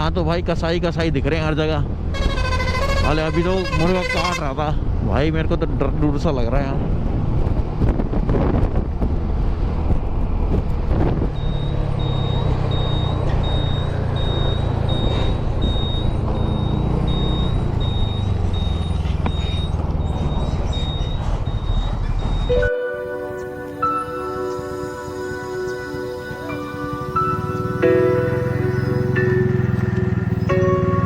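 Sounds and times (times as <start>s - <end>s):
road and wind noise: 0.0s - 31.0s
high electronic beep: 11.4s - 31.0s
motorcycle engine: 23.6s - 31.0s.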